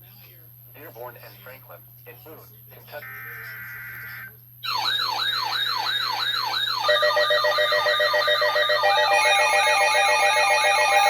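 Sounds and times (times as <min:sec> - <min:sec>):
electronic siren sweeping: 0:04.6 - 0:11.0
steady alert tones: 0:06.9 - 0:11.0.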